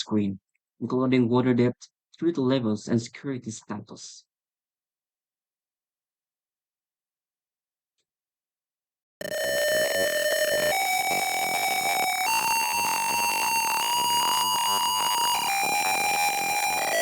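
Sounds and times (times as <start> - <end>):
electronic alarm buzzer: 9.2 - 17.0.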